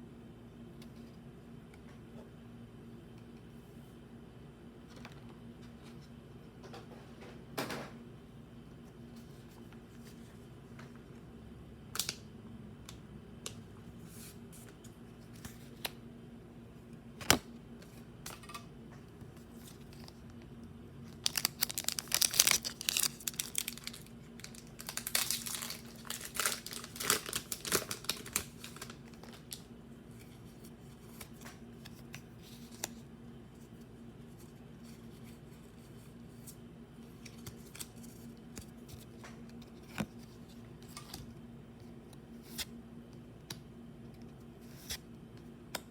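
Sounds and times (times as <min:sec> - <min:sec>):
foil wrapper tearing and crinkling: 0:21.2 - 0:29.6.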